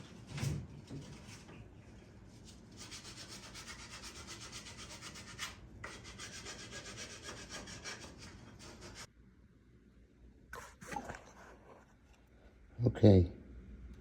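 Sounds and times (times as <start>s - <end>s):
sandpaper rubbing: 2.8s - 9.1s.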